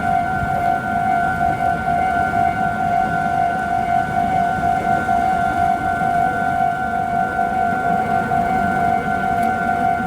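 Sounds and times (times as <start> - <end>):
level-crossing alarm ringing: 0.0 - 10.0.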